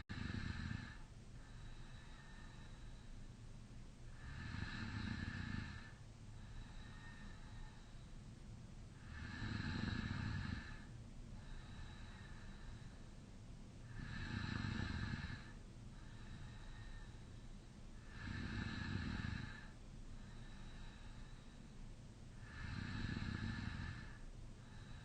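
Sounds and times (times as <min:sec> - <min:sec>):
man snoring: 0:00.1 - 0:01.0, 0:04.2 - 0:05.9, 0:09.0 - 0:10.9, 0:13.9 - 0:15.6, 0:18.1 - 0:19.7, 0:22.4 - 0:24.2.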